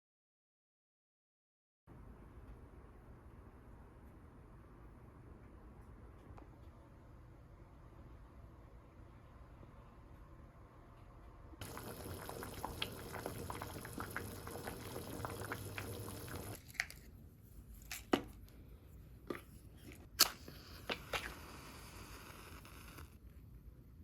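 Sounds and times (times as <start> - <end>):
wet crackly liquid noise: 11.6 - 16.6.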